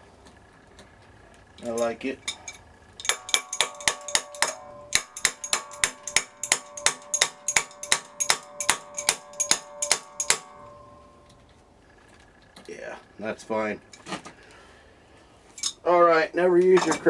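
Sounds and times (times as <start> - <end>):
wrench tapping on metal with ringing: 1.7 - 11.4.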